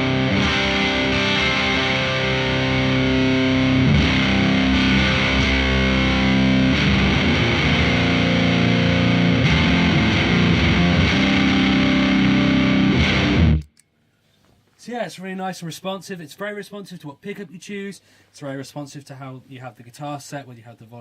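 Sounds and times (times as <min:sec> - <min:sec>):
distorted fuzz guitar chords: 0:00.0 - 0:13.8.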